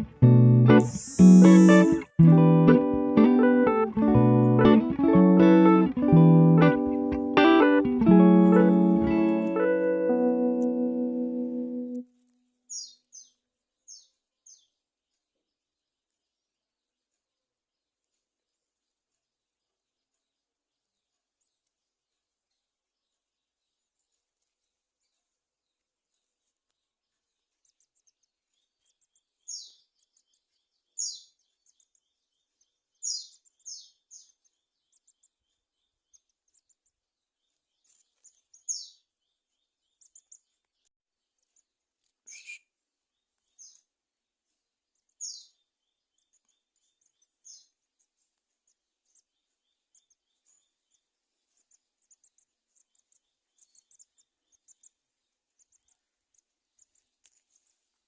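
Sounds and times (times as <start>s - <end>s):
small bird chirping: 0.0s - 7.1s, 11.8s - 58.0s
fast ticking trill: 0.0s - 9.5s.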